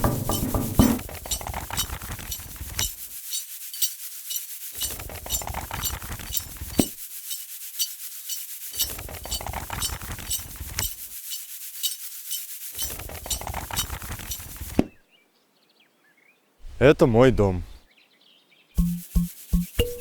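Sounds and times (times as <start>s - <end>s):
high clicks in a beat: 0.0s - 14.8s, 18.8s - 20.0s
rhythmic rubbing and scraping: 0.0s - 14.8s, 18.8s - 20.0s.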